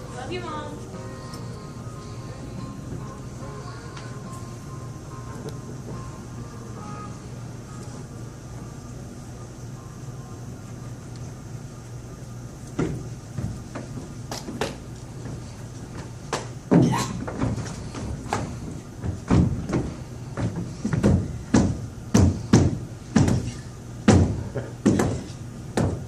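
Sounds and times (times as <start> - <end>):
dull thumps and knocks: 12.8 - 26.0.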